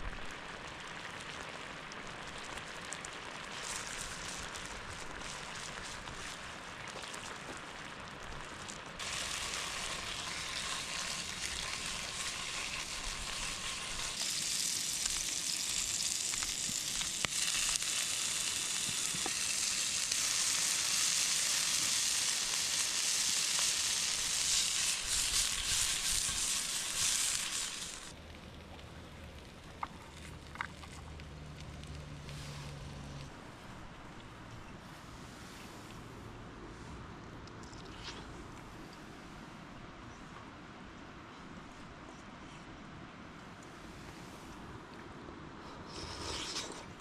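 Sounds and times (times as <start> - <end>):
sausages sizzling: 8.5 - 28.2.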